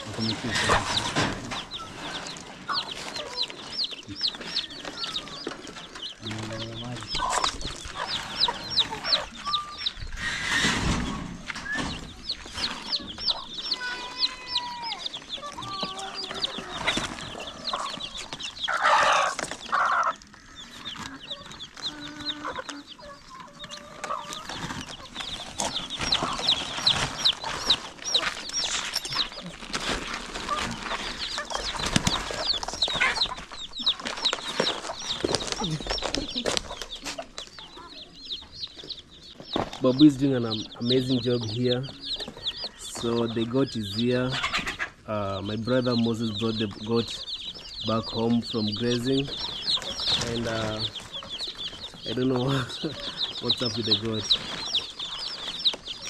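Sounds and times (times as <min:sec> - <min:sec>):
chicks peeping: 0:00.0 - 0:56.0
lower chick calls: 0:00.0 - 0:56.0
loud rustling: 0:23.4 - 0:37.6, 0:45.7 - 0:56.0.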